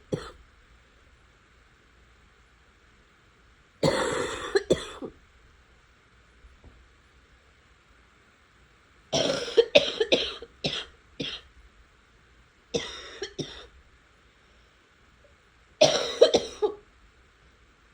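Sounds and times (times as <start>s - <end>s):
person coughing: 0.1s - 0.4s, 3.8s - 5.2s, 9.2s - 11.4s, 12.8s - 13.7s, 15.8s - 16.8s.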